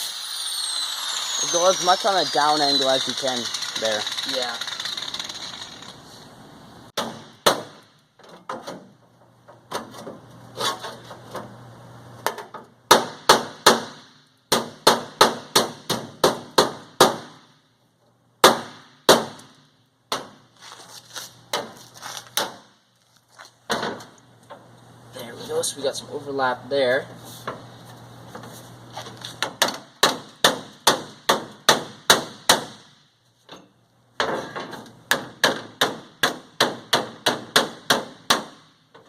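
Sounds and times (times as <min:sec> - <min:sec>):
hammer striking sheet metal: 0:29.4 - 0:32.8.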